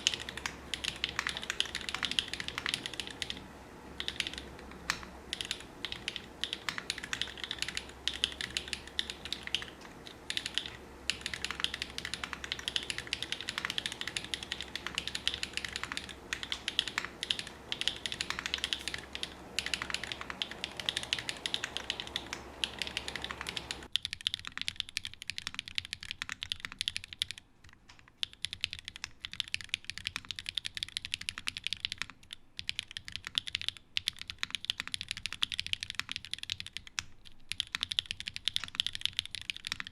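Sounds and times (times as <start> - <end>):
low background hum: 0.0 - 39.9
mechanical keyboard key clacks: 4.0 - 27.4.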